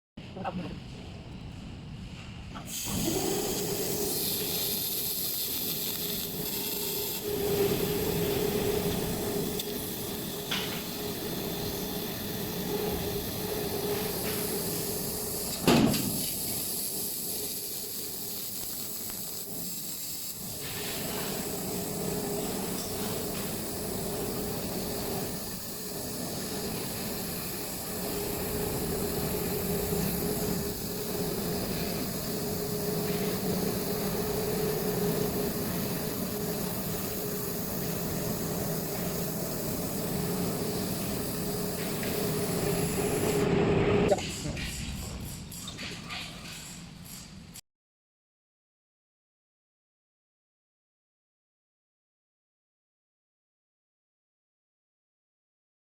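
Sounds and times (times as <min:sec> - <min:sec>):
laser cutter hissing and humming: 0:02.7 - 0:47.3.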